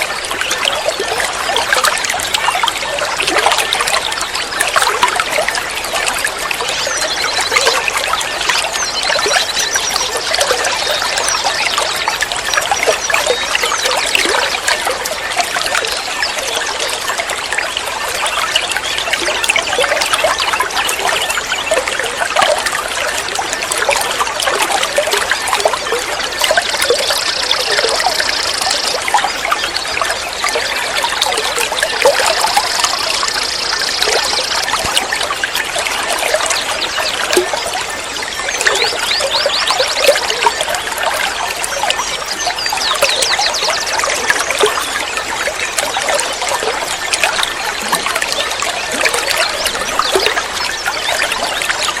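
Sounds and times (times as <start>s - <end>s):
water trickling and babbling: 0.0s - 52.0s.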